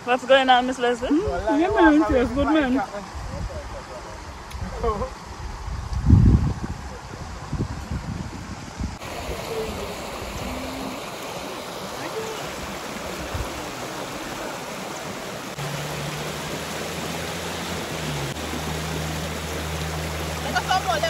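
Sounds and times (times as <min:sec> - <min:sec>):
river water rushing: 0:08.6 - 0:21.0.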